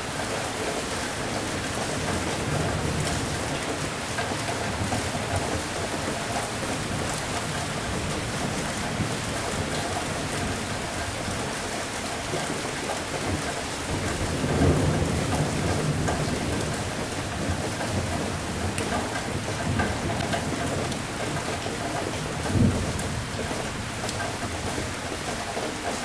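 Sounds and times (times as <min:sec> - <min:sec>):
heavy rain: 0:00.0 - 0:26.0
low roll of thunder: 0:13.9 - 0:21.4.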